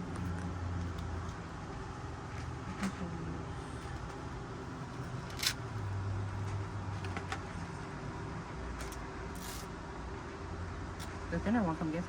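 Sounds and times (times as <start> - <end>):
clicks and rustles of small parts: 5.2 - 5.6, 8.8 - 9.7.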